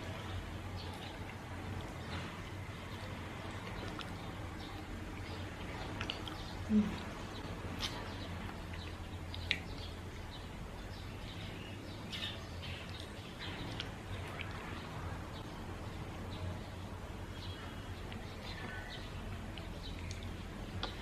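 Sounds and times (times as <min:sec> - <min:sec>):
steady low hum: 0:00.0 - 0:21.0
person chewing food: 0:00.2 - 0:09.9.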